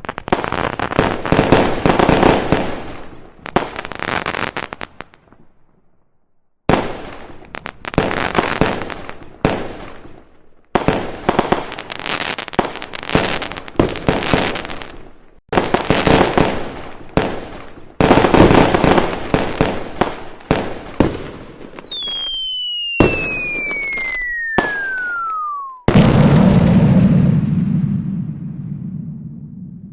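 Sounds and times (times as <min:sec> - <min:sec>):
fireworks bangs and crackling: 0:00.0 - 0:05.6, 0:06.7 - 0:29.9
falling firework whistle: 0:21.8 - 0:28.0
firework boom: 0:23.0 - 0:29.9.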